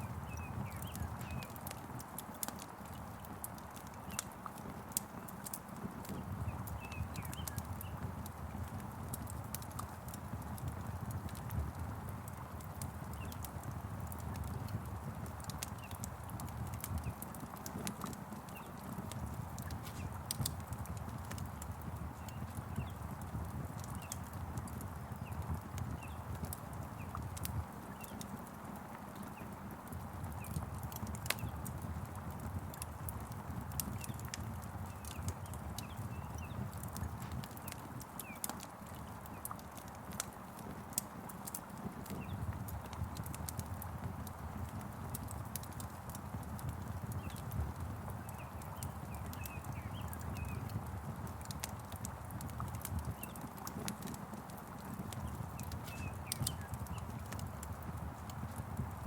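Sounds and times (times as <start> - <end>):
wood fire crackling and popping: 0.0 - 59.0
rain hissing: 19.7 - 20.5.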